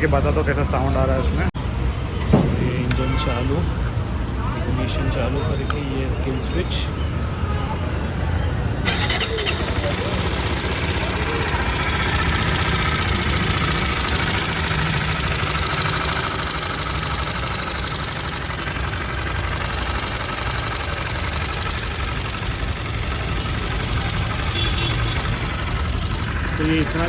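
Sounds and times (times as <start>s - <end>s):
motorcycle engine idling with knock: 2.2s - 3.2s, 8.9s - 27.0s.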